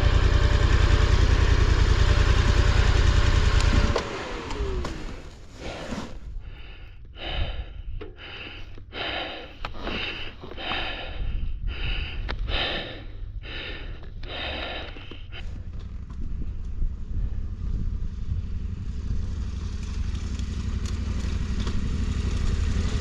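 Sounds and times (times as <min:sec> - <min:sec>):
person panting: 0:05.5 - 0:15.7.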